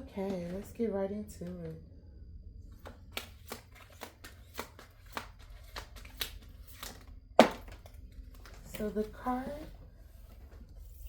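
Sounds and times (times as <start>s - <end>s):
cards being shuffled: 2.8s - 9.0s.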